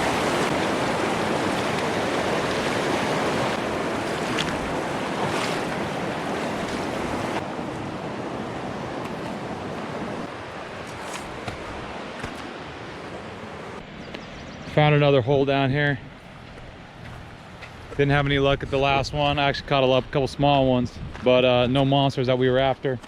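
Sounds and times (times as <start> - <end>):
rushing river water: 0.0 - 14.0.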